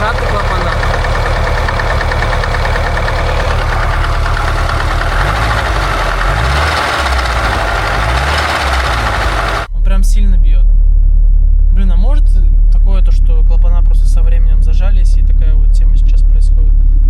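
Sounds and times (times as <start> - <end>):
rapid engine knocking: 0.0 - 9.7
car engine idling: 0.0 - 10.3.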